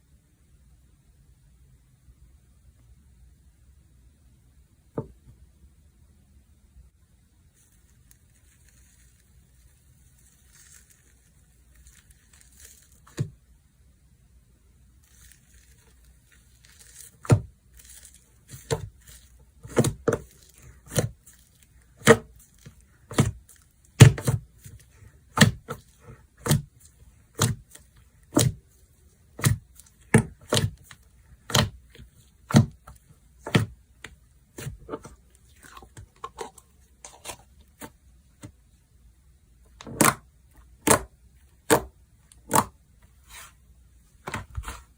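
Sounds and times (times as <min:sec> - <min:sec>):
slime crinkling: 0:07.5 - 0:13.4, 0:15.0 - 0:38.5
slime popping: 0:15.0 - 0:37.9.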